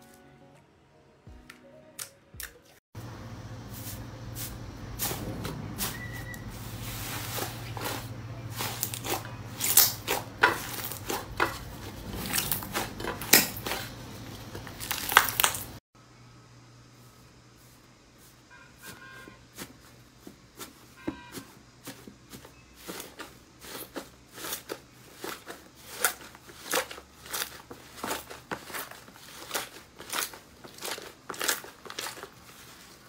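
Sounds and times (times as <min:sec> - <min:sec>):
steady low hum: 0:03.0 - 0:14.8
slime crackling and popping: 0:08.8 - 0:11.2, 0:14.6 - 0:15.8, 0:25.9 - 0:32.4.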